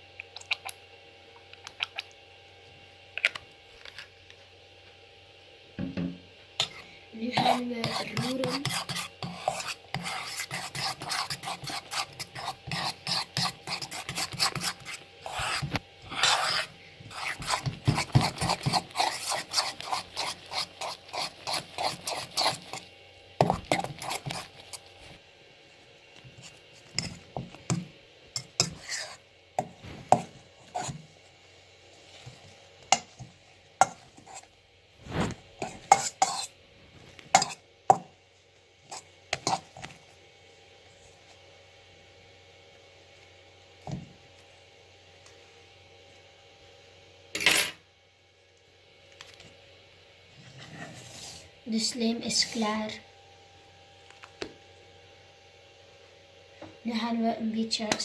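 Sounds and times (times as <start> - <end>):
utensil scraping bowl: 6.6 - 25.2, 26.3 - 31.1, 32.1 - 36.6, 37.2 - 38.1, 38.9 - 39.9, 52.2 - 52.8.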